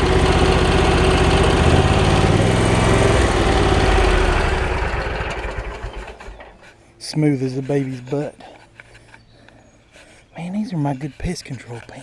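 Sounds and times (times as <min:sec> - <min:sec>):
lawn mower engine running: 0:00.0 - 0:06.8.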